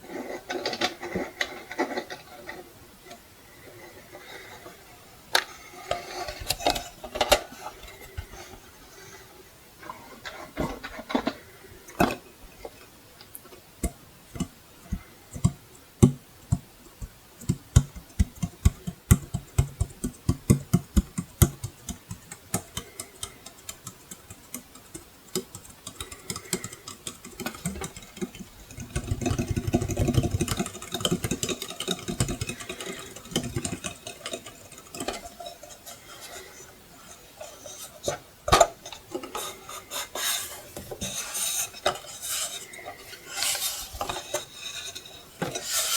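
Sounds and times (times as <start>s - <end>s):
scratching or rubbing: 27.5s - 38.3s, 39.2s - 45.9s.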